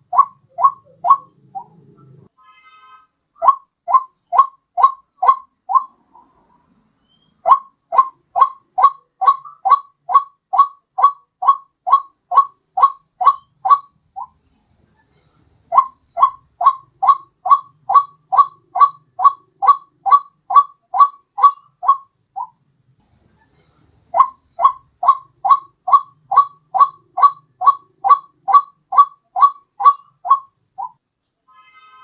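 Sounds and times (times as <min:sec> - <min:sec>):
waterhen calling: 0:00.0 - 0:02.3, 0:03.4 - 0:06.4, 0:07.0 - 0:14.4, 0:15.7 - 0:22.6, 0:24.1 - 0:31.0.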